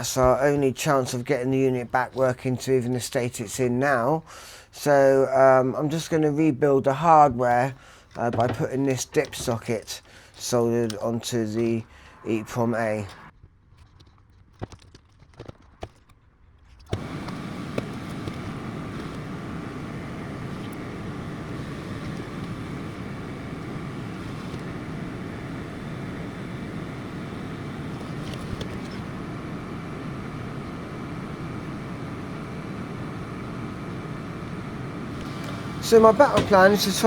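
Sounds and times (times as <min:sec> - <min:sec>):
faint clicks: 0:16.8 - 0:37.0
fan-like rushing noise: 0:16.9 - 0:37.0.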